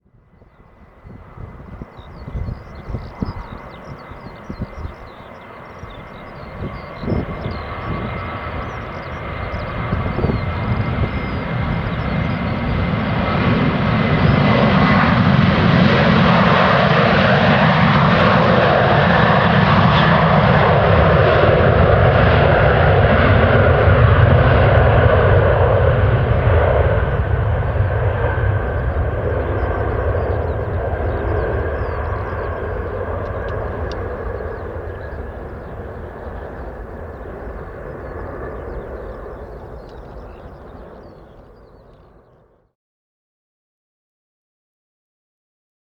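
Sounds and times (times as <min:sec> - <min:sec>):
jet engines at takeoff: 0:00.0 - 0:42.7.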